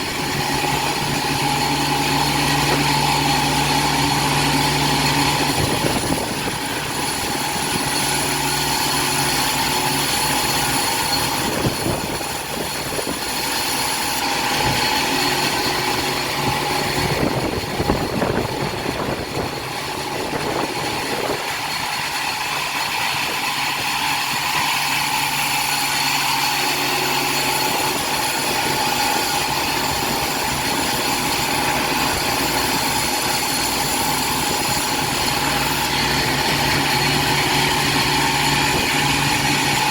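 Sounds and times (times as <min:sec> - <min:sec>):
sawmill machinery humming: 0:00.0 - 0:39.9.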